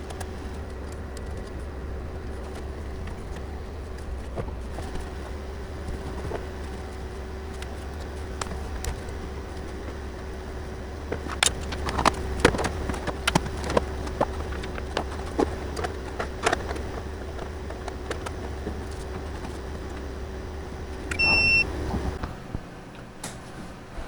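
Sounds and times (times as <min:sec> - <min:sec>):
low machine hum: 0:00.0 - 0:24.0
clicks and knocks of handling: 0:11.1 - 0:20.1
loud electronic beep: 0:21.1 - 0:21.7.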